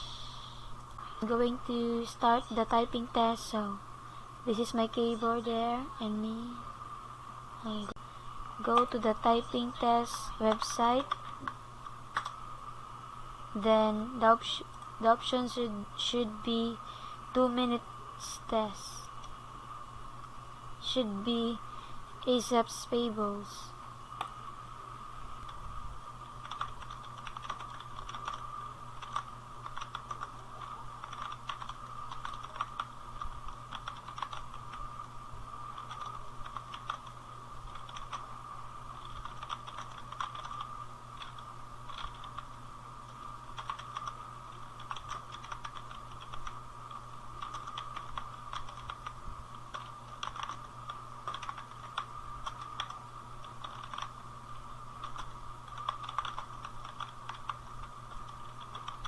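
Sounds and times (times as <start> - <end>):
keyboard typing: 8.6 - 12.4, 26.4 - 34.8, 35.6 - 38.3, 39.0 - 42.5, 43.1 - 54.2, 55.0 - 59.0.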